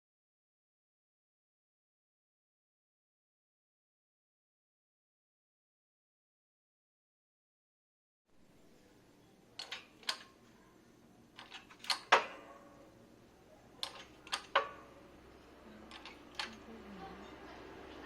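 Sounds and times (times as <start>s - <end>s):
hard objects knocking and clacking: 11.4s - 12.8s, 13.8s - 15.0s, 15.9s - 16.7s.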